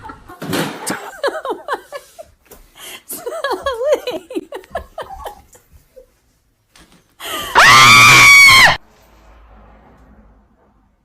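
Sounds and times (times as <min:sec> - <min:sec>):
very loud scream: 0:07.4 - 0:08.8.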